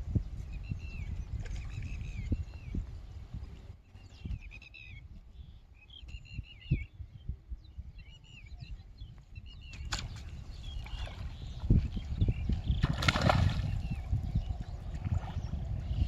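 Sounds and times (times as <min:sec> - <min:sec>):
small birds twittering: 0:03.9 - 0:16.0.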